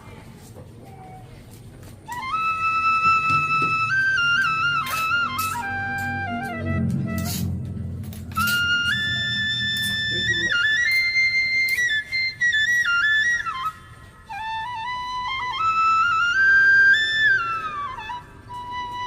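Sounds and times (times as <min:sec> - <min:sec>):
solo flute melody: 0:01.9 - 0:19.0
low steady noise: 0:02.1 - 0:19.0.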